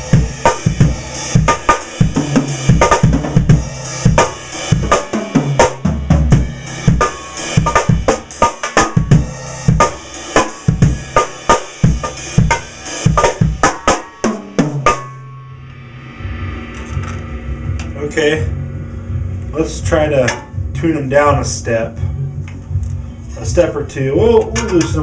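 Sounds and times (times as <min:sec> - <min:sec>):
bass drum: 0:00.0 - 0:25.0
high-pitched snare drum hits: 0:12.0 - 0:15.6.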